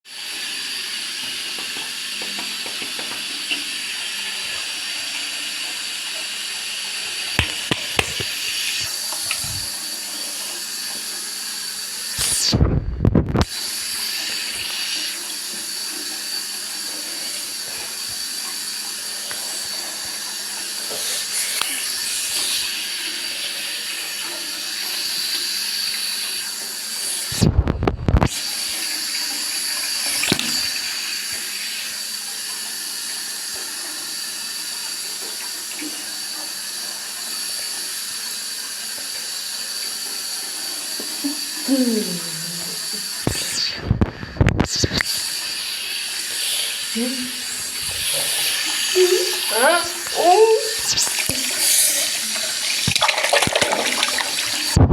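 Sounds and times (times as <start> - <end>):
sharp knocks: 7.4 - 8.6
muffled low thumps: 12.6 - 13.4
water rushing down a slide: 47.0 - 54.9.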